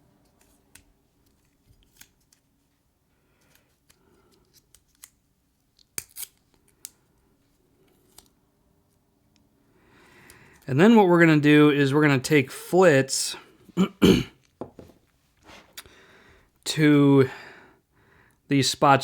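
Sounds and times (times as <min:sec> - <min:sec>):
tape being handled: 0:00.2 - 0:07.0.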